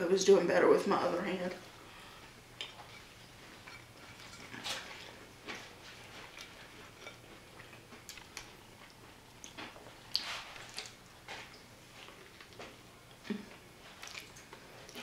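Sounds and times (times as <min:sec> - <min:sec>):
chewing mouth clicks and smacks: 0:06.3 - 0:13.4, 0:14.0 - 0:15.0.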